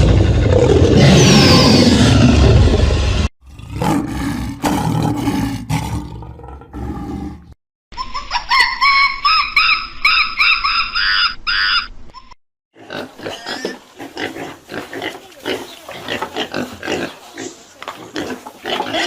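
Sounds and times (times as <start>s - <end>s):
animal grunts and growls: 3.5s - 7.6s
high-pitched animal calls: 8.2s - 12.4s.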